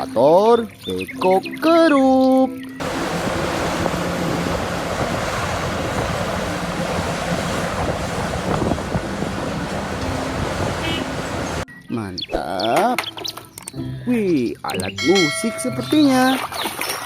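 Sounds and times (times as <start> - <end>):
water spraying: 2.8 - 11.6.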